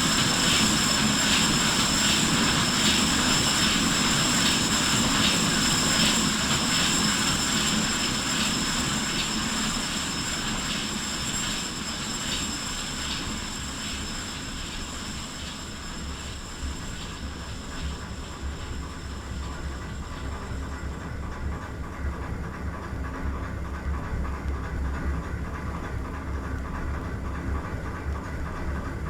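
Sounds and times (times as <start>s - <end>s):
machinery hiss: 9.1s - 20.9s.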